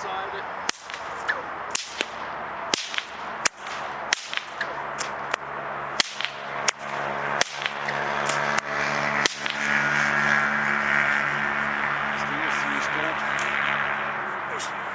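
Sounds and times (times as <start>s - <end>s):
bullwhip cracking: 0.6s - 11.1s.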